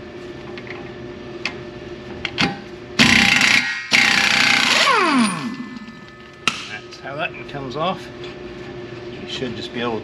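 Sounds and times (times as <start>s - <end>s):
impact wrench hammering: 2.3s - 6.8s.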